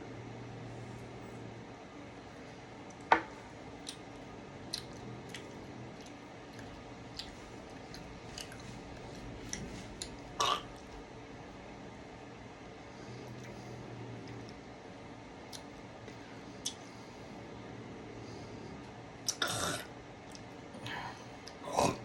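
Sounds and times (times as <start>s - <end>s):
low steady hum: 0.0s - 22.0s
wet mouth clicks: 3.8s - 4.1s, 4.7s - 8.6s, 19.2s - 19.5s
person chewing candy: 3.8s - 11.0s.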